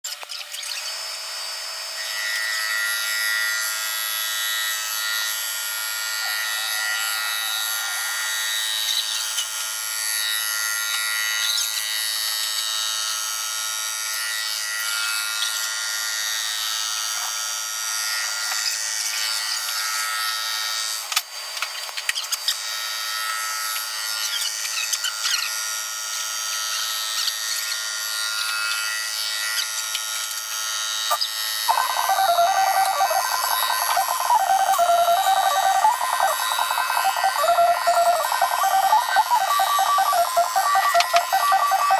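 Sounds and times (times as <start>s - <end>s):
high-pitched machining noise: 0.1s - 17.4s, 26.7s - 41.9s.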